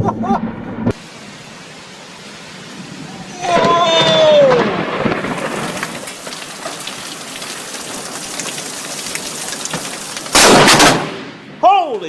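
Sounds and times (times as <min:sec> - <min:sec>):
heavy rain falling: 0:01.0 - 0:11.3
loud thunder crack: 0:02.8 - 0:07.0, 0:09.8 - 0:11.6.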